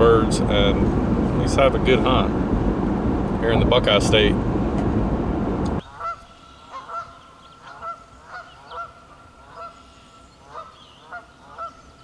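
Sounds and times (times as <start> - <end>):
loud steady rumble: 0.0 - 5.8.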